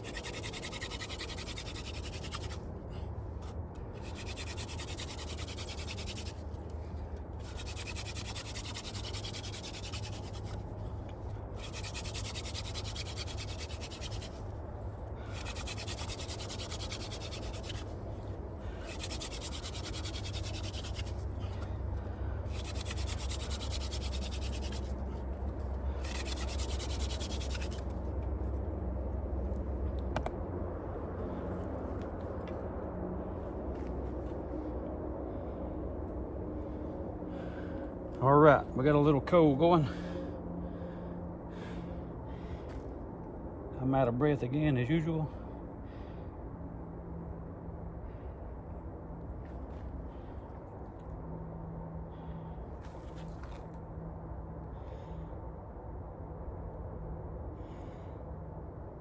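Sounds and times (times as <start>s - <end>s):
wooden spindle grinding on fireboard: 0.0s - 2.6s, 4.0s - 6.4s, 7.4s - 10.6s, 15.3s - 17.9s, 18.8s - 21.2s, 22.5s - 25.0s, 26.0s - 27.9s.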